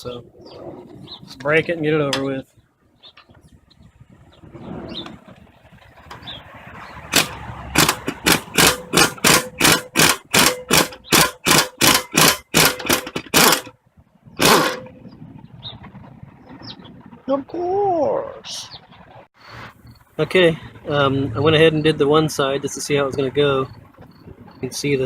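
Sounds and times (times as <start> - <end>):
impact wrench bursts: 7.1 - 13.7, 14.4 - 14.9.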